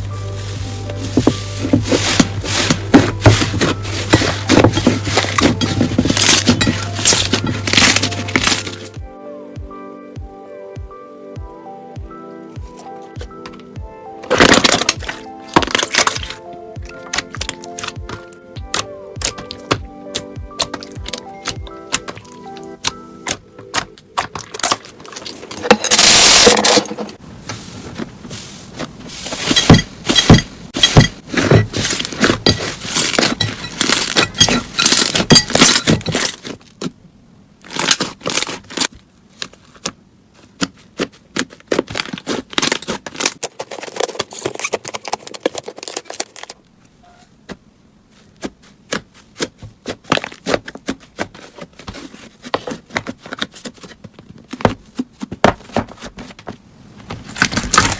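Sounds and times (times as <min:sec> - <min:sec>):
slime crackling and popping: 0:04.2 - 0:08.8, 0:14.3 - 0:25.4.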